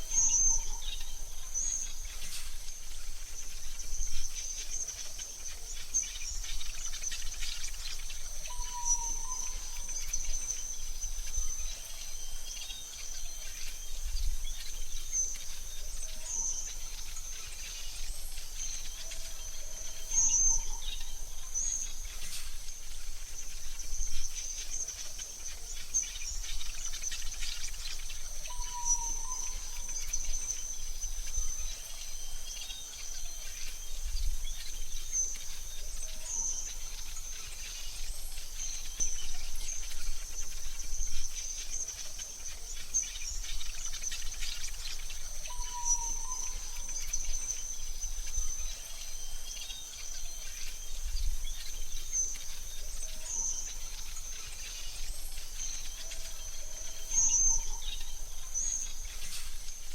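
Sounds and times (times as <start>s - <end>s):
high-pitched insect trill: 0.0s - 59.9s
low whistled bird call: 28.4s - 30.6s, 44.5s - 51.7s.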